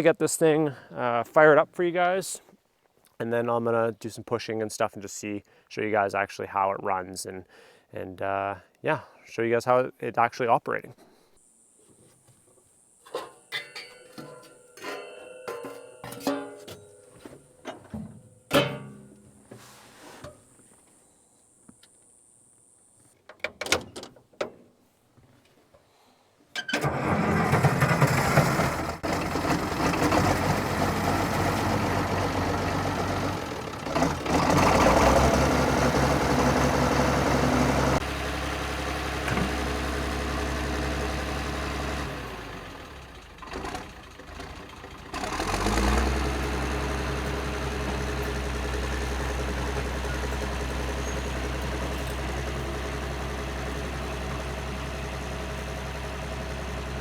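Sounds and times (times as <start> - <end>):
diesel engine starting and idling: 26.6 - 57.0.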